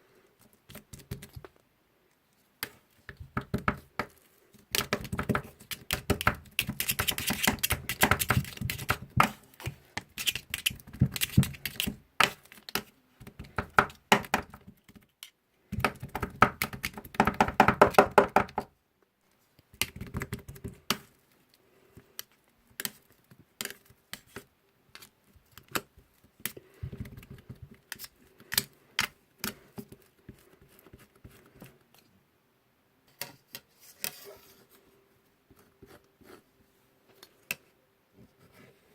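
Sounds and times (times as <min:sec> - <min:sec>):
spatulas chopping on cold plate: 0:04.8 - 0:12.4.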